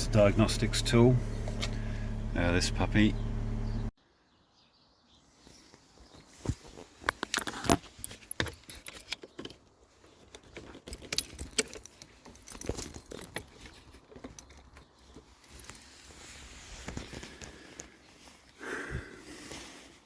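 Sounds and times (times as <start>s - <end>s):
handling clicks and rattles: 6.5s - 16.1s
keys jangling: 10.6s - 15.9s.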